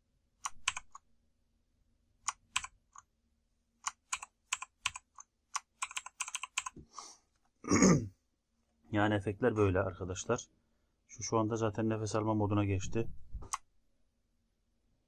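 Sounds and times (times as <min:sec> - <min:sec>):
mechanical keyboard clicks: 0:00.4 - 0:01.0, 0:02.3 - 0:02.7, 0:03.9 - 0:06.7.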